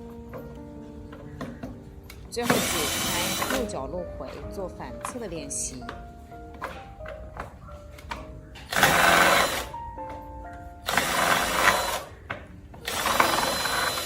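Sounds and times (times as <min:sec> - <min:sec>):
soft background music: 0:00.0 - 0:14.0
power tool whirring: 0:02.4 - 0:03.8, 0:08.6 - 0:09.8, 0:10.8 - 0:14.0.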